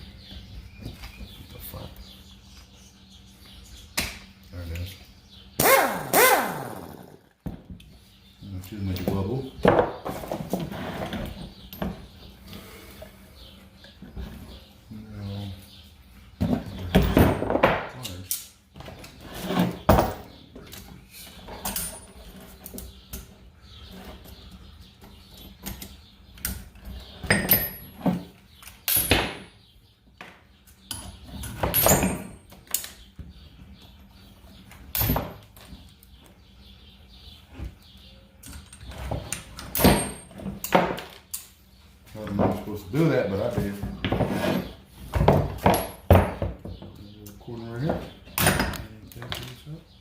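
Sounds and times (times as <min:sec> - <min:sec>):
metal tools clanking: 0:21.4 - 0:28.2, 0:30.9 - 0:32.9.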